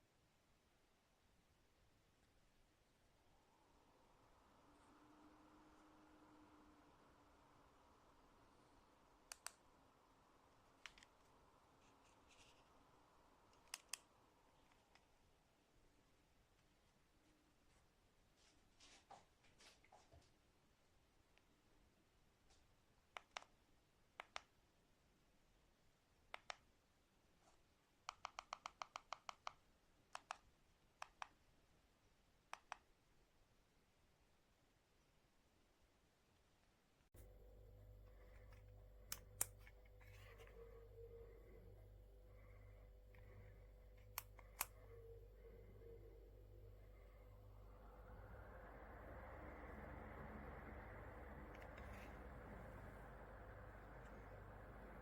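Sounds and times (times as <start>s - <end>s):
sharp clicks: 9.3s - 9.6s, 13.5s - 15.1s, 37.2s - 48.5s.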